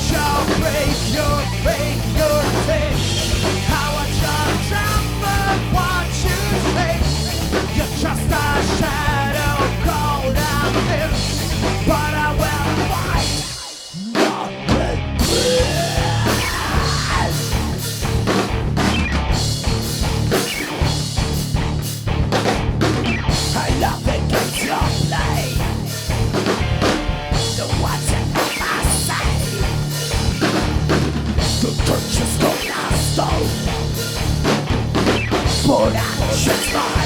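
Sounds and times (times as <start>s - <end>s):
distorted guitar and bass: 0.0s - 37.0s
drum kit beating: 0.0s - 37.0s.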